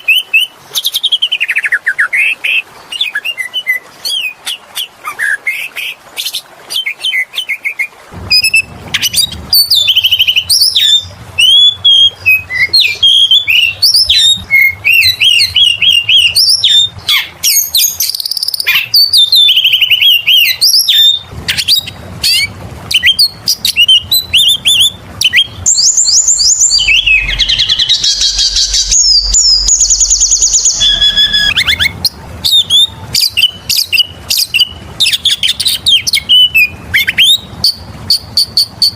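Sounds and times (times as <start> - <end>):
bird singing whistled notes: 6.8 - 38.9
low hum: 8.1 - 17.1, 21.2 - 38.1.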